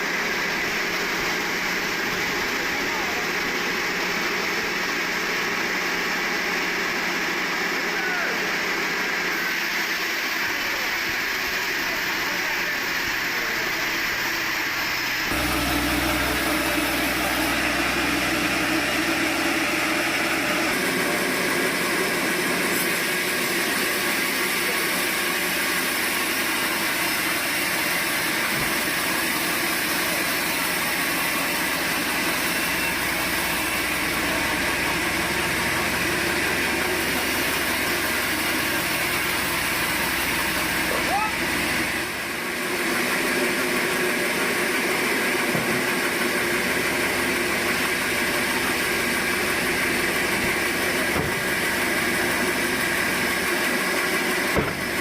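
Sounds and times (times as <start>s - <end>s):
sawmill machinery running: 0.0s - 55.0s
low hum: 15.3s - 23.0s.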